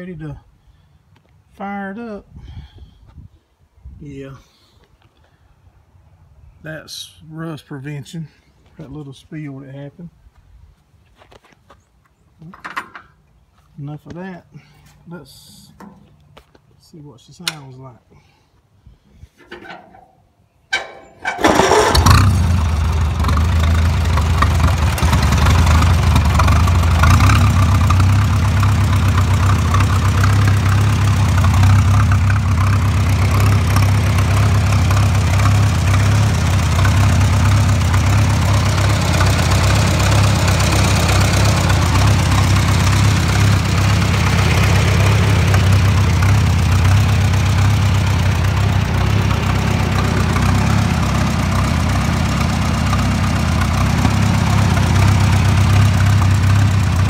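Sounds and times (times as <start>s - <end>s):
tractor engine starting and idling: 19.4s - 57.0s.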